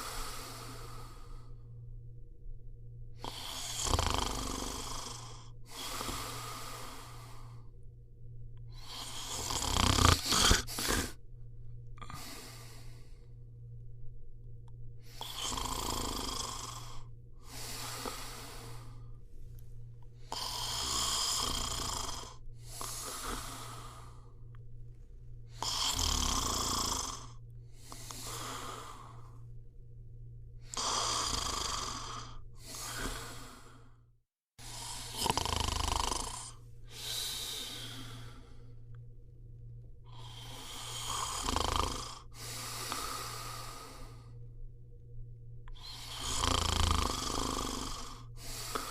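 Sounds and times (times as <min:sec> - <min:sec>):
person snoring: 0:00.0 - 0:01.7, 0:03.2 - 0:07.7, 0:08.7 - 0:11.2, 0:12.0 - 0:13.3, 0:15.0 - 0:19.2, 0:20.2 - 0:24.5, 0:25.5 - 0:29.5, 0:30.6 - 0:34.0, 0:34.6 - 0:39.0, 0:40.1 - 0:44.4, 0:45.7 - 0:48.9
steady low hum: 0:00.0 - 0:48.9.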